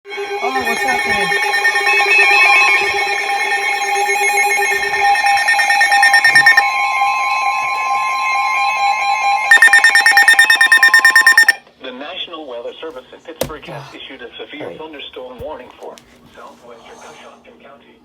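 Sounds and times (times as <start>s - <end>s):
rapid electronic beeping: 0.4s - 6.6s, 9.5s - 11.6s
electronic alarm tones: 0.4s - 6.7s, 8.2s - 11.6s.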